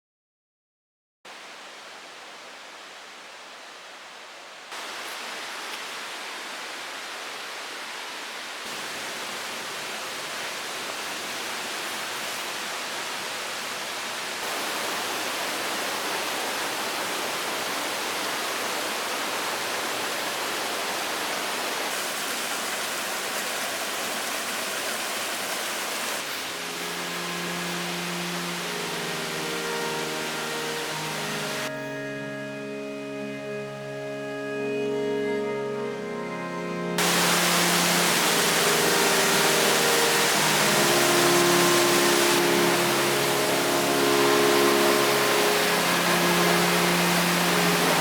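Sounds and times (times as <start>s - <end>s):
steady rushing noise: 37.0s - 48.0s.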